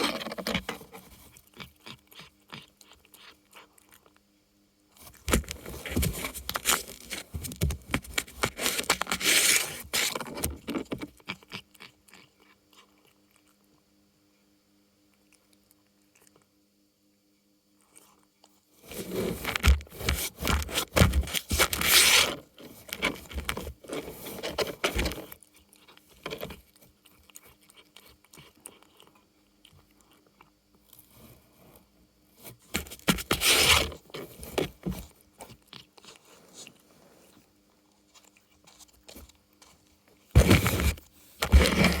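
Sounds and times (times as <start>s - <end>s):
cardboard scraping and crunching: 0.0s - 1.2s, 5.1s - 11.1s, 18.8s - 25.4s, 32.6s - 35.2s, 40.4s - 42.0s.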